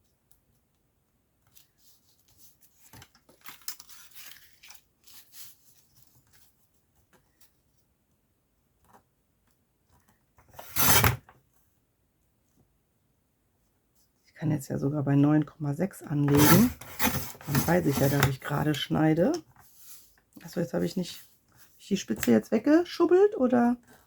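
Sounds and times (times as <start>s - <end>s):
paper and card rustling: 1.5s - 7.5s, 10.6s - 11.2s, 16.2s - 22.4s
paper trimmer blade cutting card: 10.6s - 11.2s, 16.3s - 18.3s.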